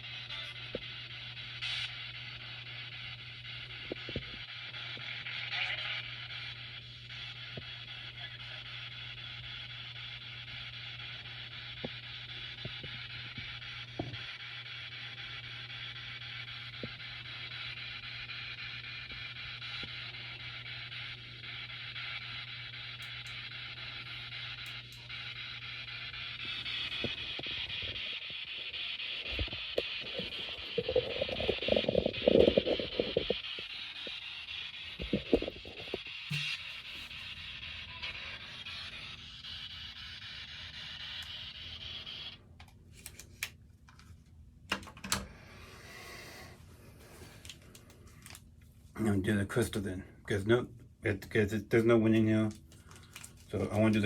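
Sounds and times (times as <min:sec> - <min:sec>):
static-like hiss: 0:00.0 - 0:42.4
low hum: 0:11.3 - 0:37.9
dense crackling: 0:21.1 - 0:39.2.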